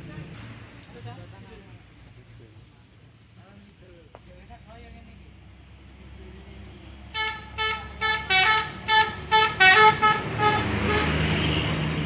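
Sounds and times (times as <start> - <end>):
bus engine passing: 0.0 - 12.0
bus musical horn playing a tune: 7.1 - 11.7.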